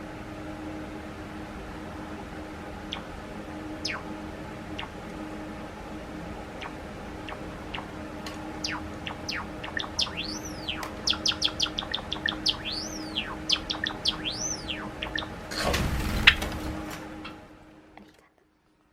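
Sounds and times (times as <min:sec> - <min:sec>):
faint steady hum: 0:00.0 - 0:18.9
sparrow chirping and whistling: 0:03.8 - 0:04.2, 0:06.6 - 0:07.9, 0:08.6 - 0:15.4.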